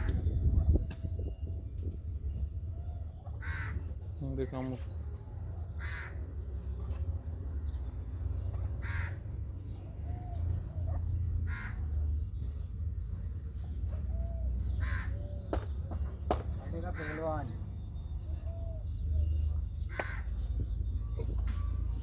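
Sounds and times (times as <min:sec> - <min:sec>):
harsh bird caws: 0:02.9 - 0:04.2, 0:05.7 - 0:06.9, 0:08.6 - 0:12.3, 0:14.0 - 0:15.8, 0:16.6 - 0:17.7, 0:19.7 - 0:20.6.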